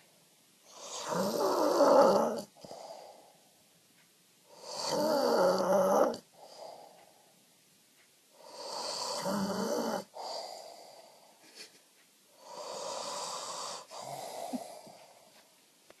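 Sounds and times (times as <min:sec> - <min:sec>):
man snoring: 0:00.7 - 0:03.2, 0:04.5 - 0:06.8, 0:08.4 - 0:11.1, 0:12.4 - 0:15.2.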